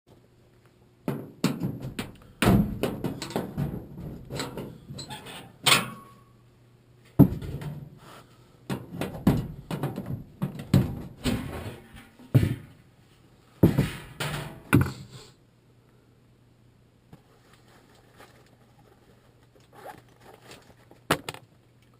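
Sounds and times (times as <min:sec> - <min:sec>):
faint steady hum: 0:00.1 - 0:21.9
hard objects knocking and rattling: 0:01.1 - 0:05.1, 0:08.7 - 0:12.7.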